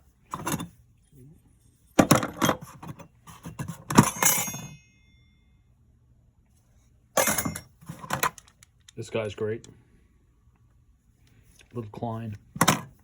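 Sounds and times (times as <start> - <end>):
metal hand tools clattering: 3.9 - 4.8, 7.2 - 8.2
high metallic ring: 4.0 - 5.8.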